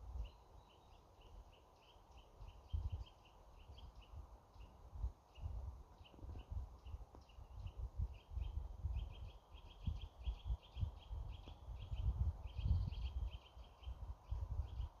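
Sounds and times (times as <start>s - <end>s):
small songbird chirping: 0.0s - 15.0s
low rumble buffeting microphone: 3.7s - 15.0s.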